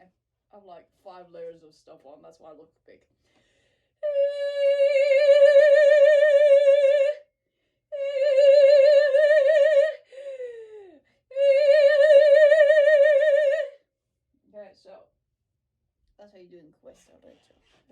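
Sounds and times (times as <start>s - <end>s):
person singing with vibrato: 4.0s - 7.3s, 7.9s - 13.8s.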